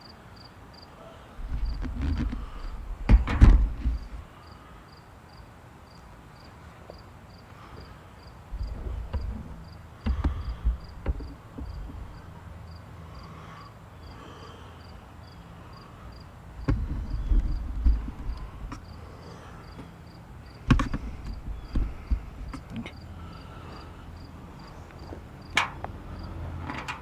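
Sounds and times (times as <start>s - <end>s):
firewood knocking and rustling: 1.4s - 4.3s, 8.5s - 12.7s, 16.6s - 18.9s, 20.6s - 22.9s
insect chirping: 1.6s - 6.5s, 8.2s - 26.4s.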